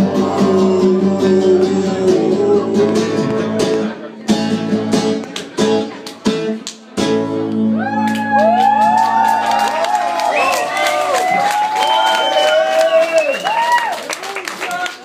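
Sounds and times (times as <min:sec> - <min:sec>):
guitar chords strummed: 0:00.0 - 0:07.8.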